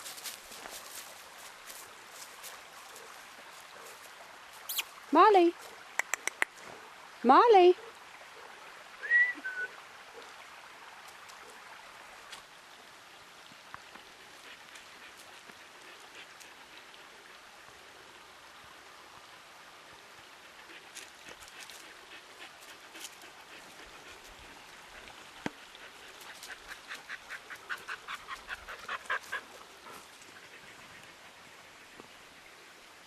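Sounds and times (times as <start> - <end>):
dogs running over forest floor: 0.0 - 4.9
soft evenly spaced ticks: 20.4 - 32.3.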